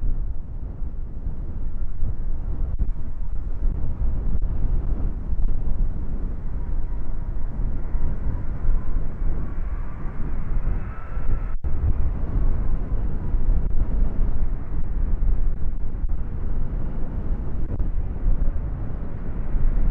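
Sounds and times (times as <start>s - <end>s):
wind buffeting microphone: 0.0s - 19.9s.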